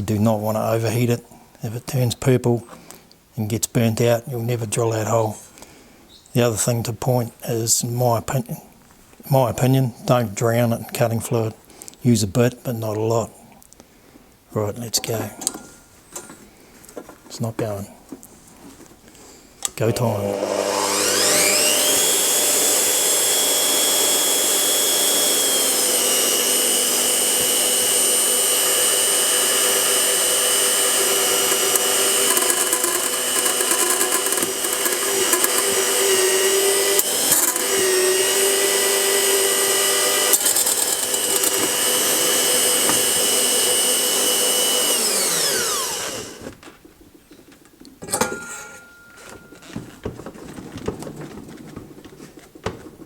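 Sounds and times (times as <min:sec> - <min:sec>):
electric drill whining: 0:19.8 - 0:46.6.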